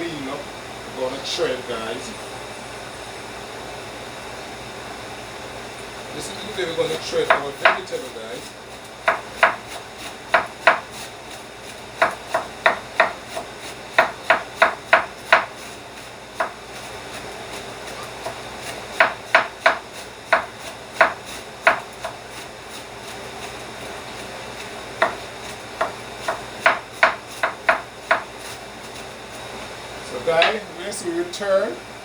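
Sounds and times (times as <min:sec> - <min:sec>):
knife chopping on cutting board: 0:07.2 - 0:08.0, 0:09.0 - 0:11.1, 0:11.7 - 0:15.7, 0:16.4 - 0:16.9, 0:17.5 - 0:23.5, 0:25.0 - 0:29.0.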